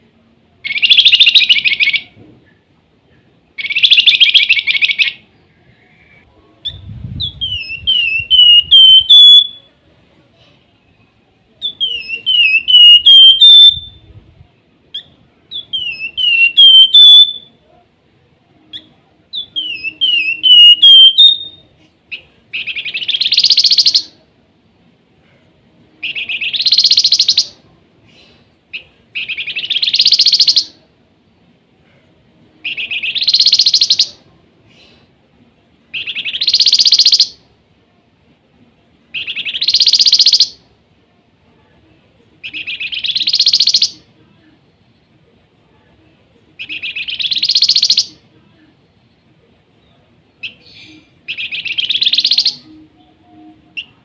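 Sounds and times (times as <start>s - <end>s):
songbird whistling: 0.6s - 2.2s, 3.6s - 5.2s, 5.8s - 9.8s, 11.6s - 14.1s, 14.9s - 17.6s, 18.7s - 21.6s, 22.6s - 24.1s, 26.0s - 27.6s, 29.2s - 30.7s, 32.7s - 34.2s, 36.0s - 37.4s, 39.2s - 40.6s, 42.4s - 44.1s, 46.5s - 48.2s, 49.8s - 54.0s
bird buzzy calls: 11.7s - 13.8s, 15.6s - 17.3s.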